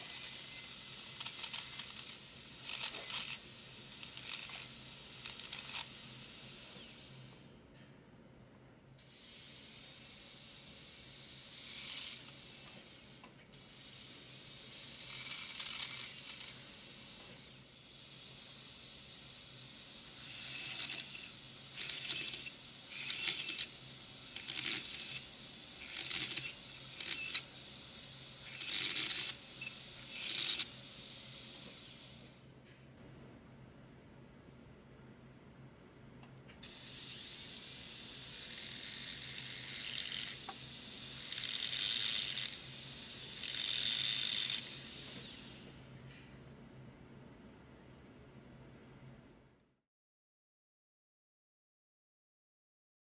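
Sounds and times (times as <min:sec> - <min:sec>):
dental drill hiss: 0:00.0 - 0:07.2, 0:09.0 - 0:32.4, 0:36.6 - 0:45.7.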